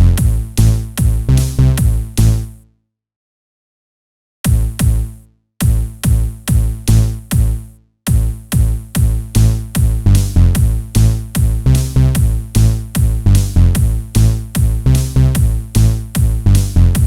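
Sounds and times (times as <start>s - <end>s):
electronic dance music: 0.0s - 2.4s, 8.2s - 17.0s.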